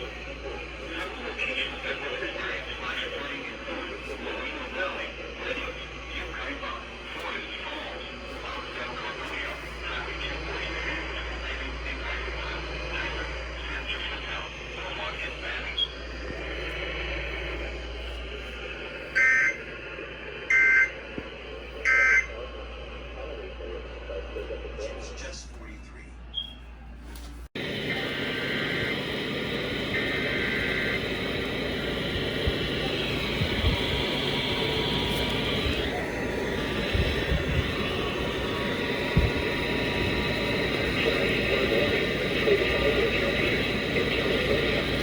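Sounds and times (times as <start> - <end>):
radio static hiss: 0.0 - 25.2, 27.6 - 45.0
faint steady tone: 27.6 - 45.0
steady hiss: 27.6 - 45.0.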